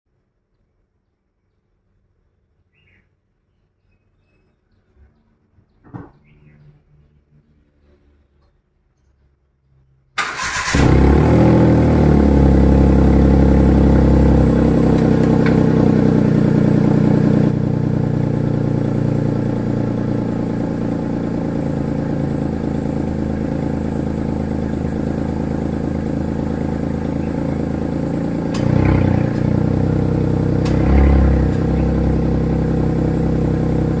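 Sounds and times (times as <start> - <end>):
car engine starting and idling: 10.2 - 34.0
engine revving: 10.2 - 34.0.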